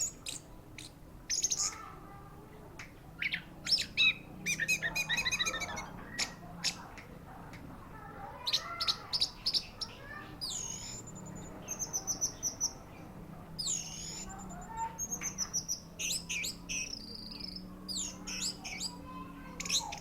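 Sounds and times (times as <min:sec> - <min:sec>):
thrush singing: 0:08.5 - 0:20.0.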